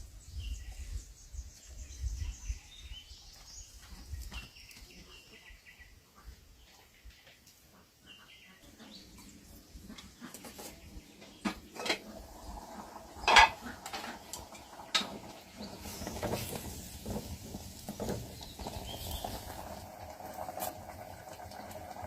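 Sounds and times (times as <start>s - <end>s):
dishes and utensils clinking: 11.5s - 12.1s, 13.2s - 14.2s.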